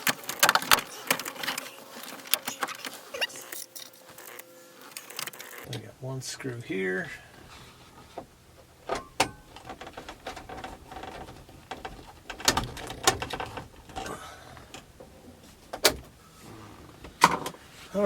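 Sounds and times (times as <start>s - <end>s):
plastic clicks and knocks: 8.2s - 16.1s.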